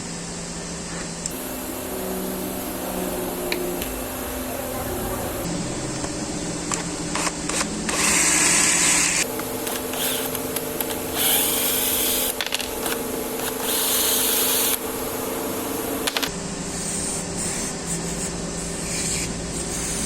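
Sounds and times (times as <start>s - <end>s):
steady machine hum: 0.0s - 20.0s.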